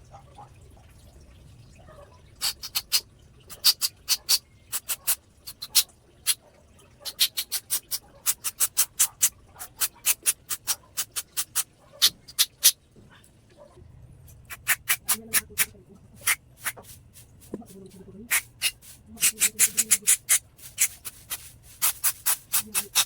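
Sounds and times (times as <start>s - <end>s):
short sharp spray bursts: 2.4s - 6.4s, 7.1s - 12.8s, 14.5s - 23.0s.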